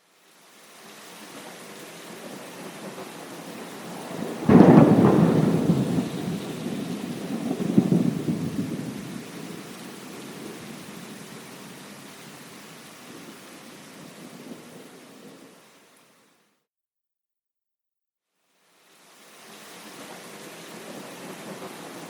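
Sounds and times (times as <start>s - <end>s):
steady rain: 0.0s - 16.6s, 18.4s - 22.0s
rolling thunder rumble: 3.1s - 11.8s
thunderclap: 3.8s - 10.7s.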